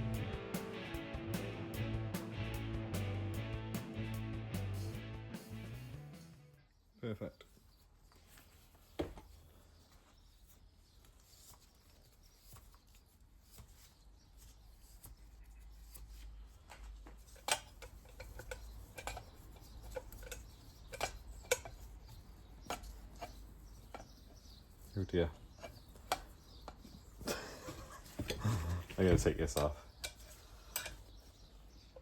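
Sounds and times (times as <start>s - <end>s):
metal clicks of hand tools: 17.2s - 24.1s, 29.3s - 31.1s.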